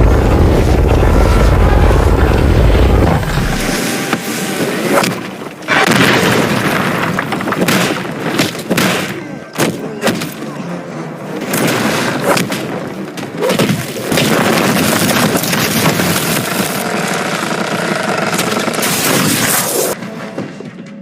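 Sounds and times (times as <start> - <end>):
dense rumble: 0.0 - 4.0.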